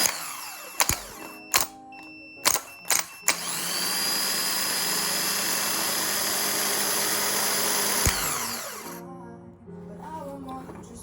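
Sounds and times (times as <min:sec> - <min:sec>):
starter motor whining: 0:00.0 - 0:01.8, 0:02.4 - 0:09.0.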